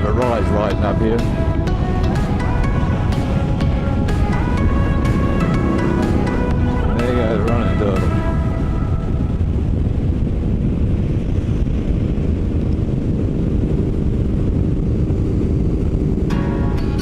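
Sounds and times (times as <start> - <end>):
music: 0.0 - 11.1, 15.8 - 17.0
motorcycle engine rumble: 0.0 - 17.0
wind buffeting microphone: 0.0 - 17.0.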